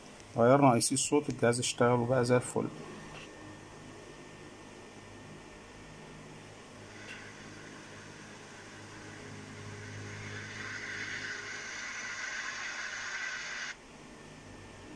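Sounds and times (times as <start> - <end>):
hiss through car speaker: 6.9 - 13.8.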